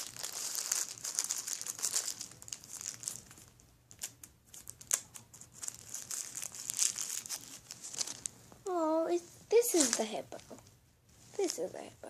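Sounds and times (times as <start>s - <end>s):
plastic packaging crinkling: 0.0s - 8.3s, 9.6s - 10.6s.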